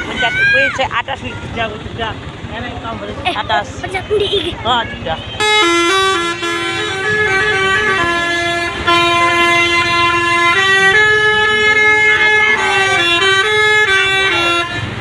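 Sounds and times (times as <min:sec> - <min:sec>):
multi-tone bus horn melody: 0:05.1 - 0:15.0.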